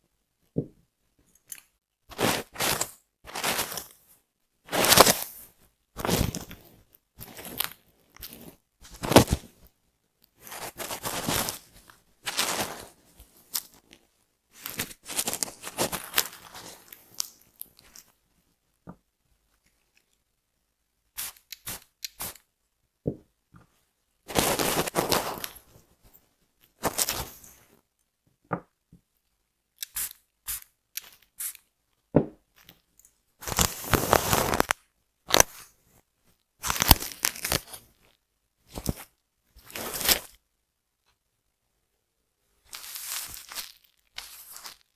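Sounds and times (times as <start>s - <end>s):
scratching on scalp: 33.4s - 34.7s.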